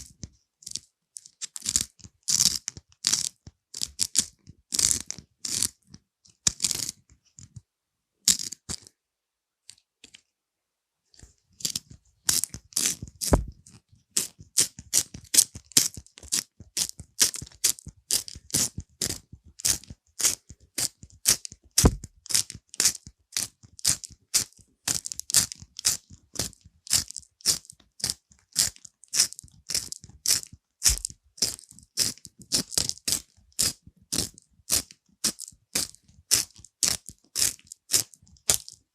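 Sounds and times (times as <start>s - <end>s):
pencil writing on paper: 30.8s - 31.6s.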